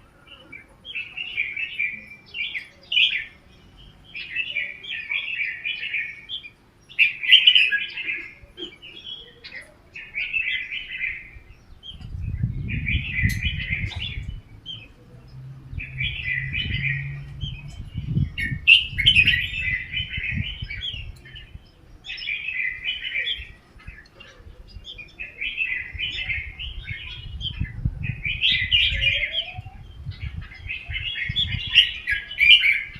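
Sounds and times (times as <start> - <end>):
bulbuls singing: 0.0 - 32.9
low rumble: 11.4 - 21.8.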